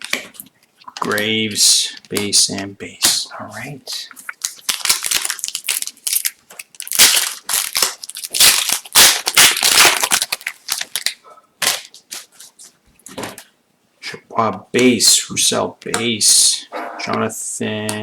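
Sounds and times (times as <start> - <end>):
foil wrapper crinkling: 4.0 - 12.4.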